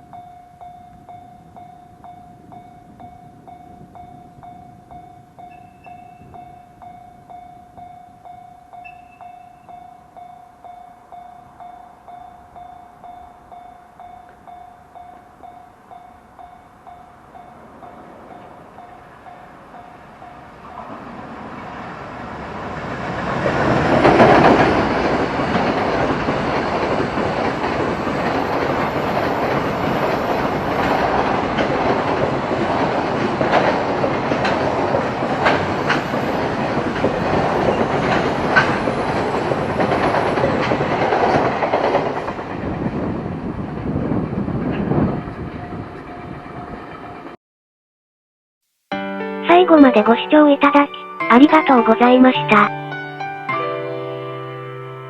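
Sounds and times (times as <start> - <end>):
freight train passing: 0.0 - 47.4, 49.4 - 55.0
wheels clicking over rail joints: 17.8 - 42.6.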